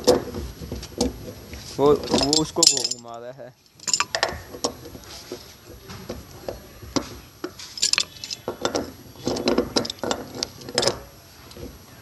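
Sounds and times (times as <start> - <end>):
pipe wrenches clinking on metal: 0.0 - 5.0, 7.0 - 11.1.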